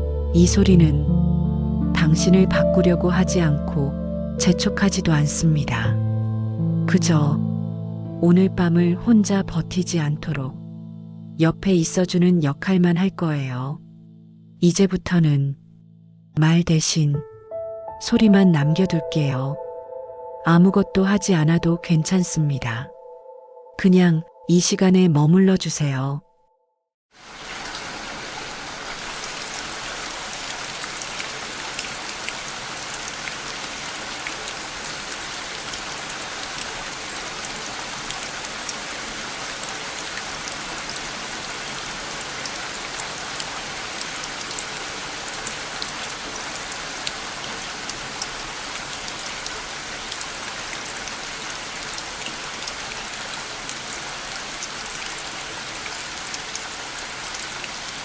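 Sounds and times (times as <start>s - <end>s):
steady rain falling: 27.2s - 58.0s.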